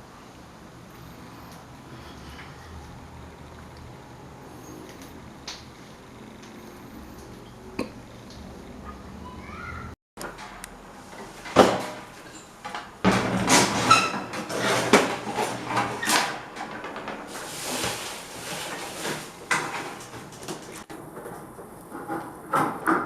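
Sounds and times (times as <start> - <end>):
fan parts knocking and clattering: 10.2 - 23.0.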